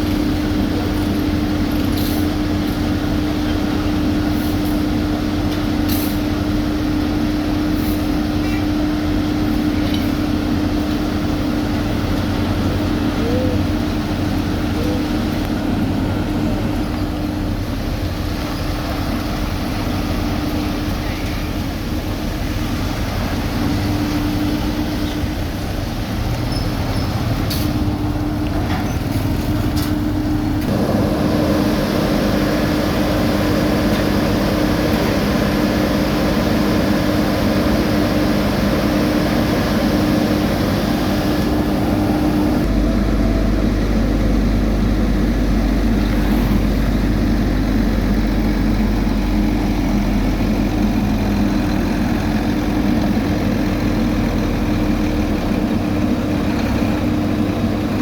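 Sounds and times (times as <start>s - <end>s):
heavy diesel machinery running: 0.0s - 58.0s
second engine note: 30.6s - 53.6s.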